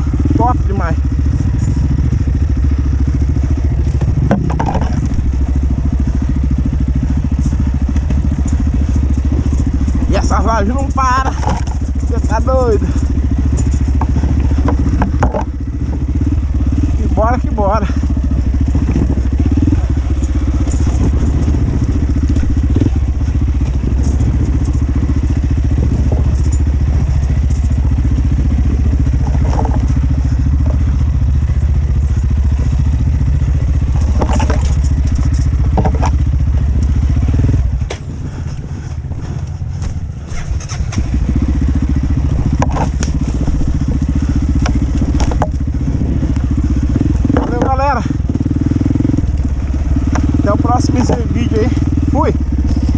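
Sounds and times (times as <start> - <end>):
dirt bike engine: 0.0 - 52.9
knocks and clatter: 3.8 - 5.5, 6.5 - 16.1, 28.7 - 30.8, 33.8 - 36.4, 42.3 - 43.7, 44.6 - 45.7, 47.2 - 47.8.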